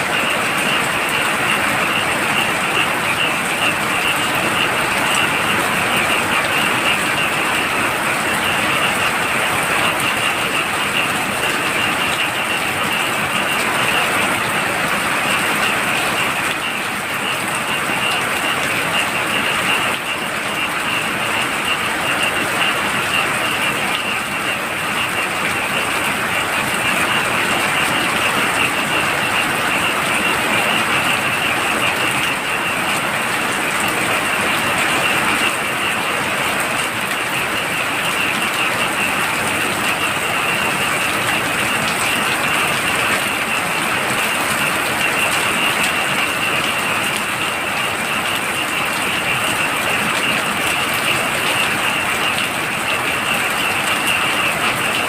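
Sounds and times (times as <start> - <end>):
frogs calling: 0.0 - 55.0
heavy rain: 0.0 - 55.0.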